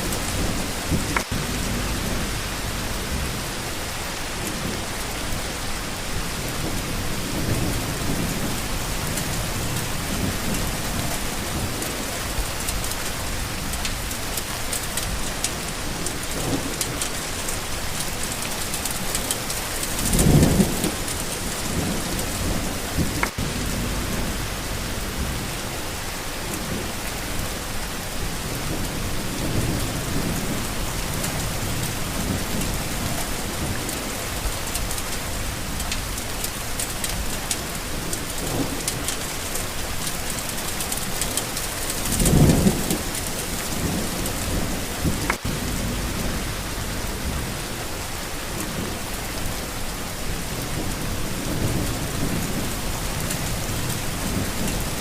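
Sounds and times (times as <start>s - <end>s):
low rumbles: 0.0s - 5.4s, 20.2s - 25.8s, 43.8s - 49.1s
steady rain: 0.0s - 55.0s.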